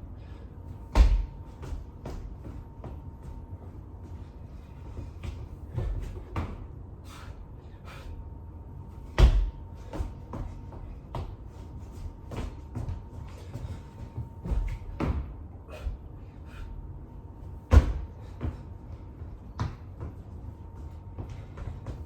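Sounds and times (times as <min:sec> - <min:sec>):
thuds of burpees on floor: 0:00.8 - 0:03.4, 0:05.0 - 0:06.7, 0:09.1 - 0:15.9, 0:17.5 - 0:20.2.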